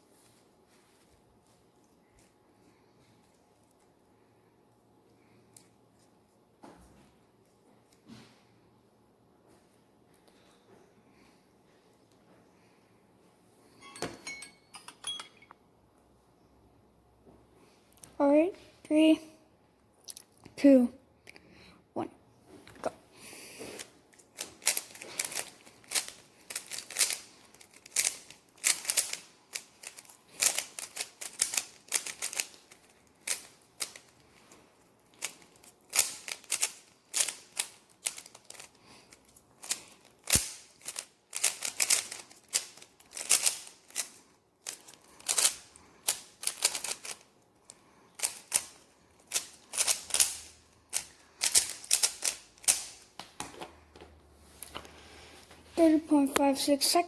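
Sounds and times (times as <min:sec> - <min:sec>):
plastic puzzle cube clicking: 0:27.9 - 0:34.1.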